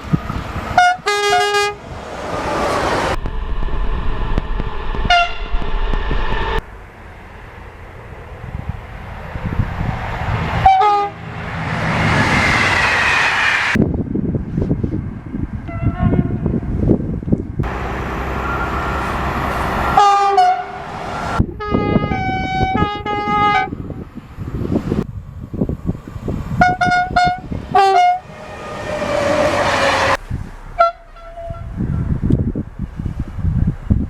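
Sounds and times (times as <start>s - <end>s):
rumble of passing trains: 0.0s - 34.0s
train horns: 0.7s - 1.8s, 5.0s - 5.6s, 10.6s - 11.2s, 15.7s - 16.7s, 17.7s - 23.8s, 26.6s - 32.1s.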